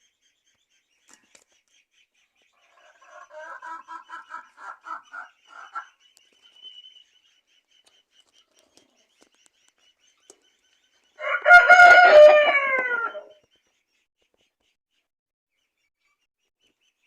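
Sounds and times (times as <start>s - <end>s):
rapid high-pitched chirping: 0.0s - 11.2s
poultry calling: 2.5s - 9.6s, 11.2s - 13.4s.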